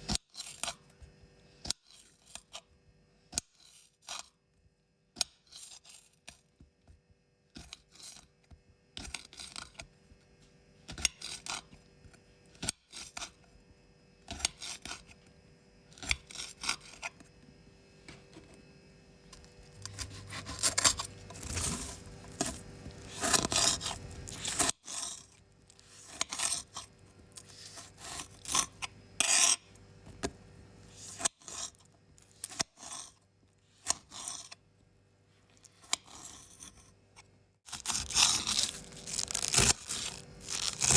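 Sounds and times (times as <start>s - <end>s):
knife scraping: 0.0s - 0.9s, 1.6s - 2.7s, 3.3s - 4.3s, 5.2s - 6.4s, 7.6s - 8.3s, 9.0s - 9.9s, 10.9s - 11.8s, 12.6s - 13.4s, 14.3s - 15.2s, 15.9s - 17.3s, 19.3s - 30.3s, 30.9s - 33.2s, 33.8s - 34.6s, 35.5s - 40.9s
knife slicing vegetables: 19.7s - 29.6s, 37.7s - 40.9s.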